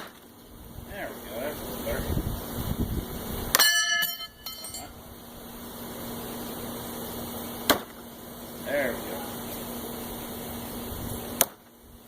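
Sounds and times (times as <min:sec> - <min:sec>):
knife striking target metallic clank: 0:03.6 - 0:04.9
blade ringing: 0:03.6 - 0:05.0.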